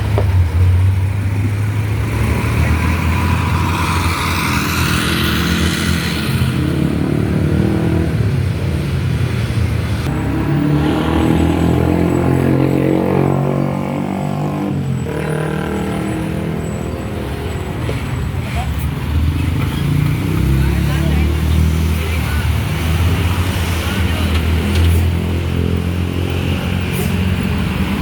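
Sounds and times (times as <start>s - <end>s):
diesel bus engine rumbling: 0.0s - 28.0s.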